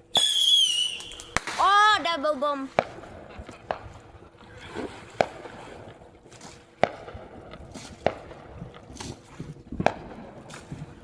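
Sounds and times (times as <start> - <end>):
fireworks bangs with echo: 0.1 - 4.2, 6.8 - 11.0.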